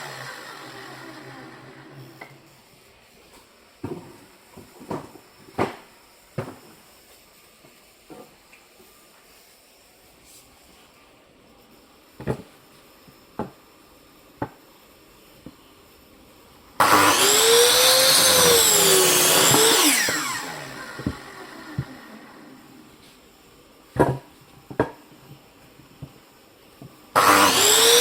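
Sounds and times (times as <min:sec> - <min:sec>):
electric saw cutting wood: 0:00.0 - 0:02.4, 0:16.8 - 0:22.8, 0:27.2 - 0:28.0.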